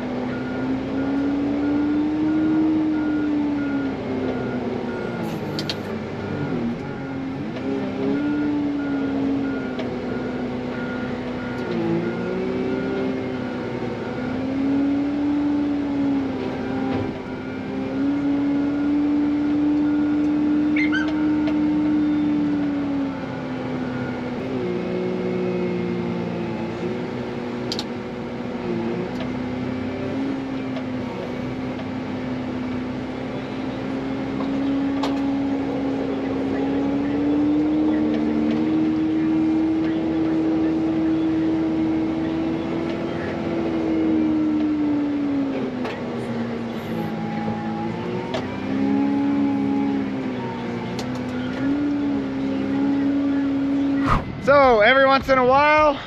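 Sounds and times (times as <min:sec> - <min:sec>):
diesel engine running under load: 0:00.0 - 0:56.0
reversing alarm beeping: 0:00.2 - 0:16.0.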